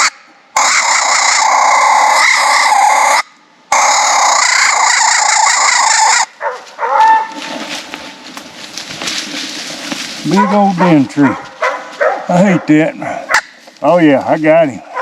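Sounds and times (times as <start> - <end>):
hound yelping and barking: 0.0 - 7.4, 10.3 - 13.4.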